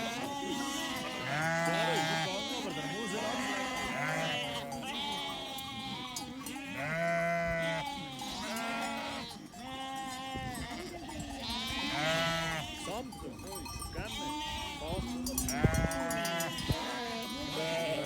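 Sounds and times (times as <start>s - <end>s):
sheep bleating: 0.0s - 13.1s, 14.0s - 18.0s.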